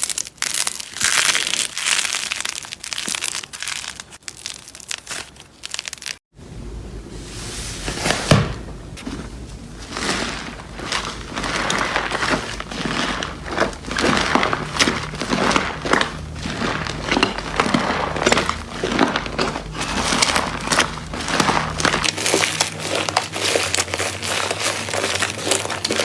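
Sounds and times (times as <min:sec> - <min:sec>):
slime squeezed crackling and popping: 0:00.0 - 0:06.2, 0:10.5 - 0:26.0.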